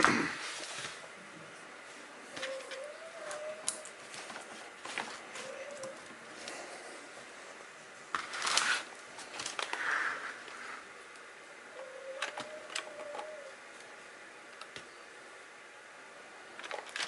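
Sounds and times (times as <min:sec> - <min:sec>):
scratchy rustles: 0:08.1 - 0:10.8.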